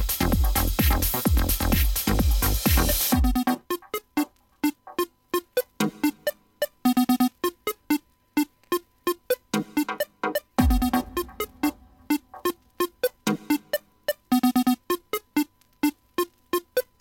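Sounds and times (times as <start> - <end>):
sparse synthesizer notes: 10.6 - 12.6.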